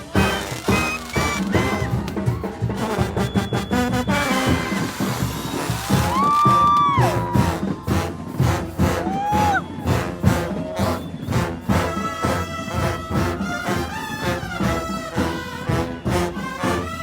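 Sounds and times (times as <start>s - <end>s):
brass band playing: 0.0s - 17.0s
drum beat: 0.0s - 17.0s.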